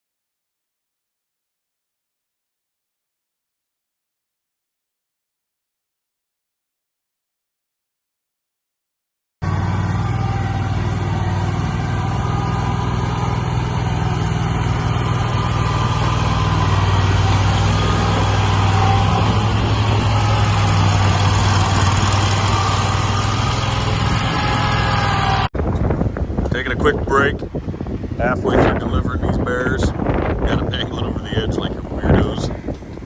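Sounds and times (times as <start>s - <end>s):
vehicle engine and road drone: 9.4s - 33.0s.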